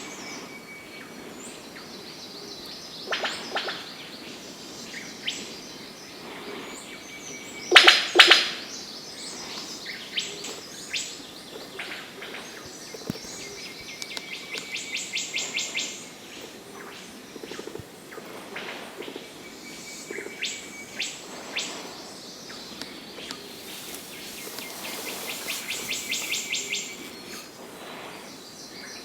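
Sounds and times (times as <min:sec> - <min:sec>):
forest background hiss: 0:00.0 - 0:29.0
birds calling: 0:22.6 - 0:28.6.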